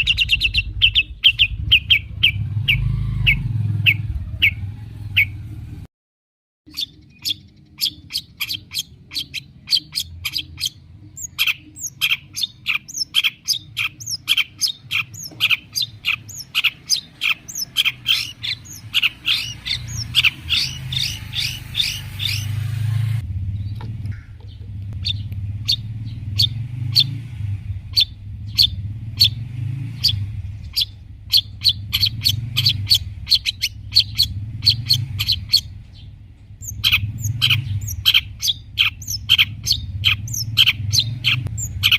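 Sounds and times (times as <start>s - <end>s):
bird singing sharp chirps: 0.0s - 5.4s, 6.7s - 41.9s.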